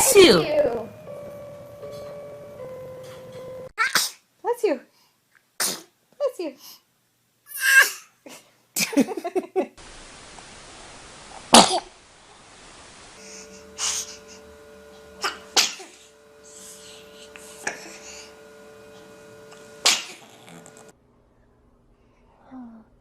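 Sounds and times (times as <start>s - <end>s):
babies sneezing: 3.8s - 4.2s, 5.6s - 5.9s, 7.5s - 8.2s, 15.2s - 16.0s, 19.8s - 20.8s.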